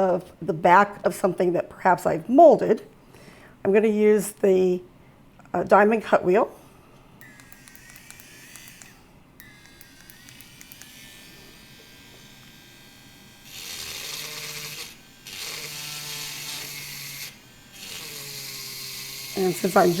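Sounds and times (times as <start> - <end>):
cut wheel grinding clay: 7.2 - 20.0
rotary tool whining: 7.2 - 20.0.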